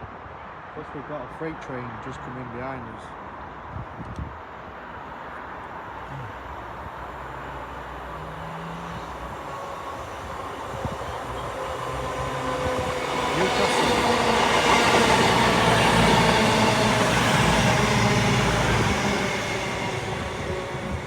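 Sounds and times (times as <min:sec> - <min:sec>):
diesel train engine running: 0:09.0 - 0:21.0
train wheels on rails: 0:09.1 - 0:21.0.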